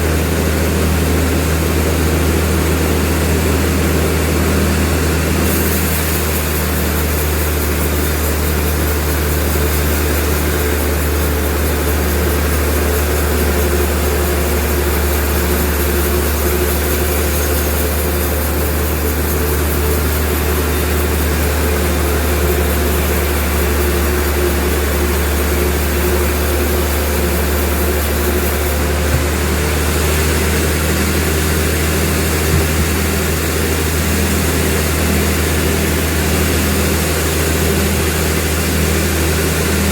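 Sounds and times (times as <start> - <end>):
sawmill machinery droning: 0.0 - 39.9
small knock: 32.5 - 33.0.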